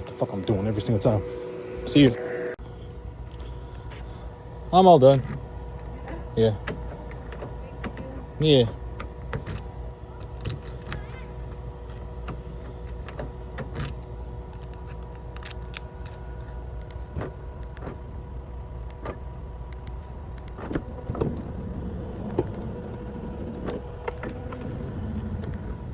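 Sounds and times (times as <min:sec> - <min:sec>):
vehicle engine running: 0:00.0 - 0:25.9.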